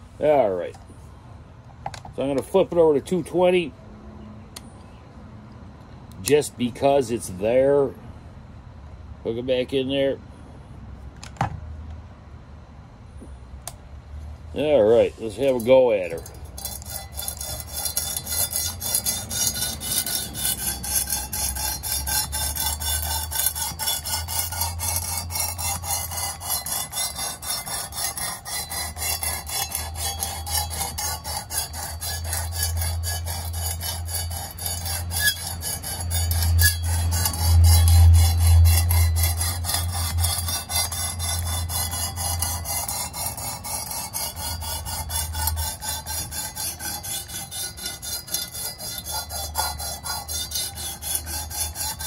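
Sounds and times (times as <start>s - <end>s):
sharpening stone scraping knife edge: 15.0s - 52.0s.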